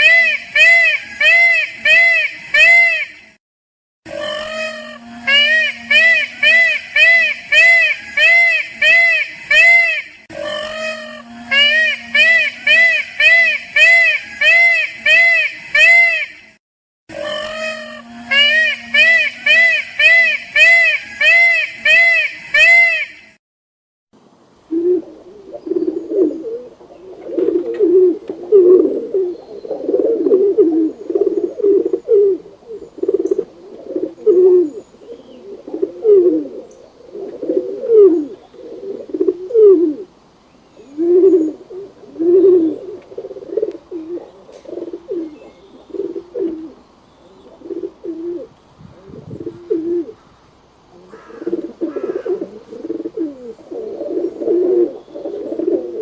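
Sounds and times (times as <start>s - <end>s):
pigeons cooing: 4.1s - 9.5s, 10.3s - 15.6s, 24.6s - 40.2s, 40.8s - 50.3s, 50.9s - 56.0s.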